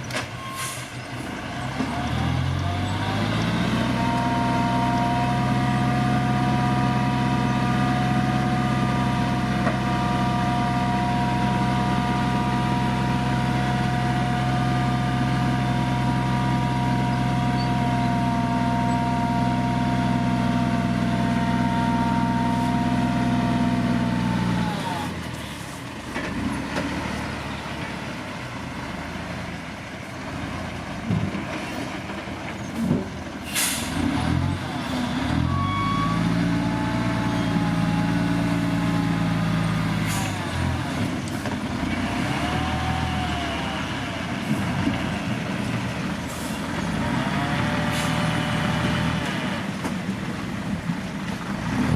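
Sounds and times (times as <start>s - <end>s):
diesel engine running with whine: 0.0s - 31.2s, 32.8s - 51.9s.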